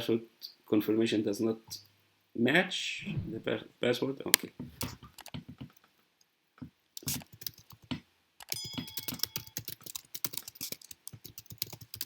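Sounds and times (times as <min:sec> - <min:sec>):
computer keyboard typing: 0:07.0 - 0:12.0.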